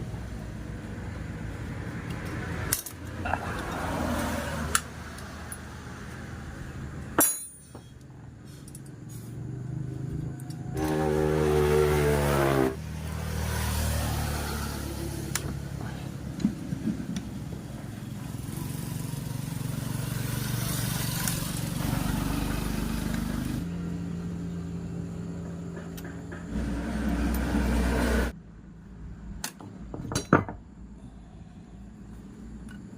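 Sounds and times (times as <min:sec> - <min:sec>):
vehicle engine running: 0:08.0 - 0:28.4.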